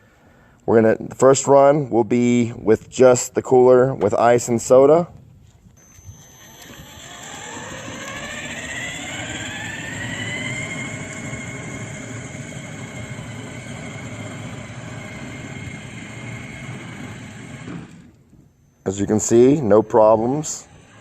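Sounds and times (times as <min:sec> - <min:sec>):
wheels rumbling: 0:05.8 - 0:18.1
electric motor whining: 0:05.8 - 0:21.0.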